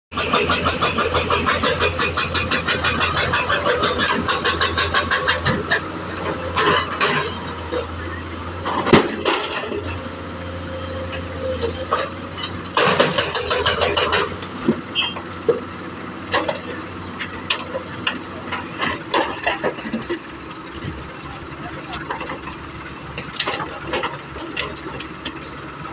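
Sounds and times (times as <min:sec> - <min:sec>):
knocks and clanks: 0:00.1 - 0:10.1, 0:11.1 - 0:25.6
excavator diesel engine running: 0:00.1 - 0:25.9
rattling noise: 0:11.0 - 0:15.7.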